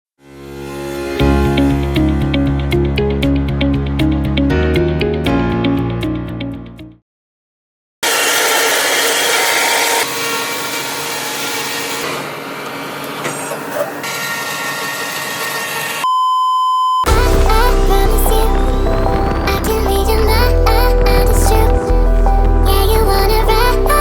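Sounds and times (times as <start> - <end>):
steady electronic beep: 16.0 - 22.6
music with heavy bass beat: 17.1 - 24.0.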